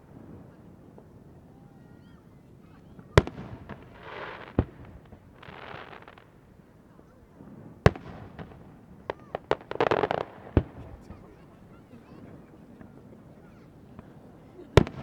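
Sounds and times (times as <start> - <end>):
firework shells booming: 3.0 - 6.6, 7.5 - 11.8, 14.0 - 15.0.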